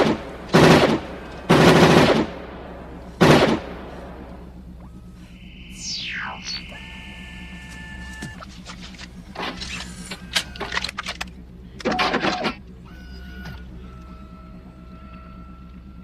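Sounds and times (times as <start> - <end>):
low electronic hum: 0.0 - 16.0
held electronic tones: 4.6 - 10.6.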